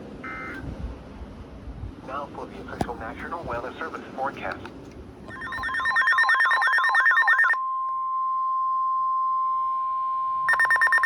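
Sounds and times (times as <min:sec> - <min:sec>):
steady single alarm tone: 0:00.2 - 0:00.6, 0:05.3 - 0:11.0
fast electronic beeping: 0:05.3 - 0:07.6, 0:10.5 - 0:11.0.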